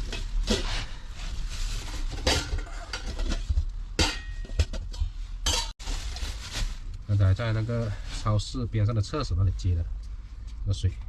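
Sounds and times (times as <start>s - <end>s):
low steady rumble: 0.0s - 11.0s
pots and dishes clinking: 2.0s - 5.8s.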